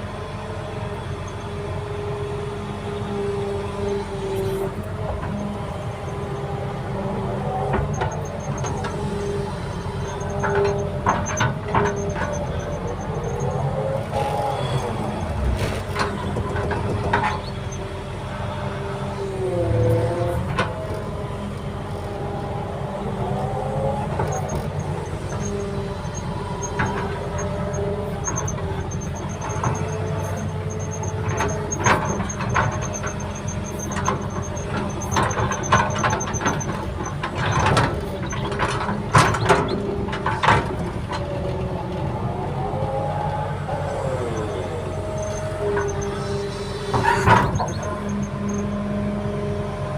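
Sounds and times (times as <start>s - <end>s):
earthmoving machine whining: 0.9s - 49.9s
machine clanks and knocks: 10.0s - 13.4s, 15.2s - 17.7s, 24.1s - 41.7s.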